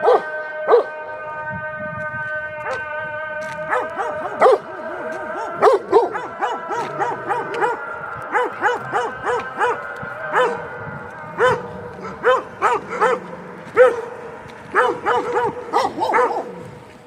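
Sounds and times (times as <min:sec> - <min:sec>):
dog barking: 0:00.0 - 0:01.0, 0:03.6 - 0:10.7, 0:11.4 - 0:16.6.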